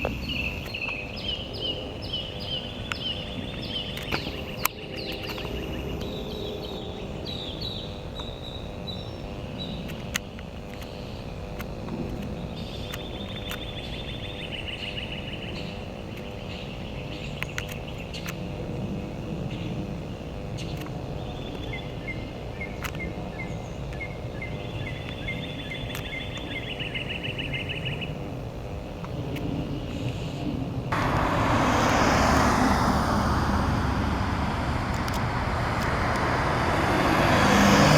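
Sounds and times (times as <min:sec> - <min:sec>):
steady low rumble: 0:30.5 - 0:37.9.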